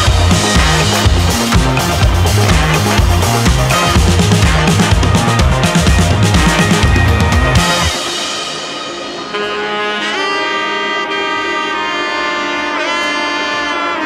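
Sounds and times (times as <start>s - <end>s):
drum-heavy beat: 0.0s - 10.4s
saxophone-like wind instrument: 0.0s - 14.0s.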